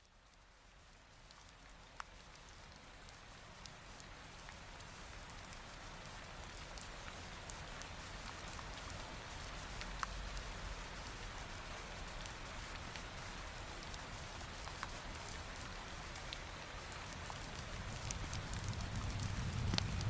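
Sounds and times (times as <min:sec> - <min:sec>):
rain hiss: 0:01.2 - 0:20.0
drops ticking: 0:17.3 - 0:20.0
low rumble: 0:17.5 - 0:20.0.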